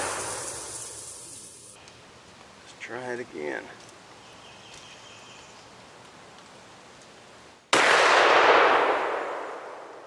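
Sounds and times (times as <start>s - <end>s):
shotgun blast: 7.8s - 9.9s.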